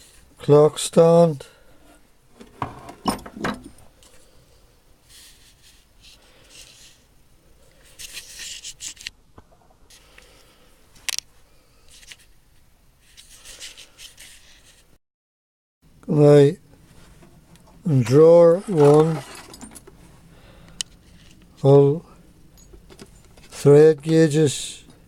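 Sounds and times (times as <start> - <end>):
rustling and scraping: 1.8 - 4.3, 5.0 - 7.1, 7.7 - 10.3, 13.0 - 14.9, 16.7 - 25.0
tools clicking and knocking: 2.4 - 3.8.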